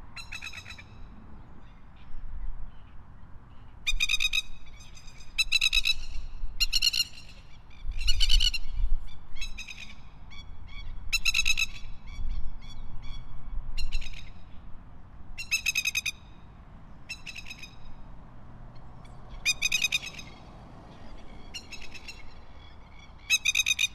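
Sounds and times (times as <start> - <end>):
lapwings calling: 17.1 - 17.9, 18.8 - 23.9.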